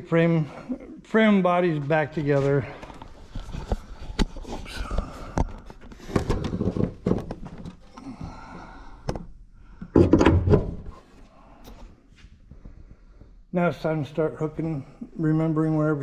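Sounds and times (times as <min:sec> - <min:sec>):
objects clattering: 0:02.2 - 0:07.9
objects knocking and thudding: 0:02.8 - 0:08.4, 0:09.1 - 0:11.0.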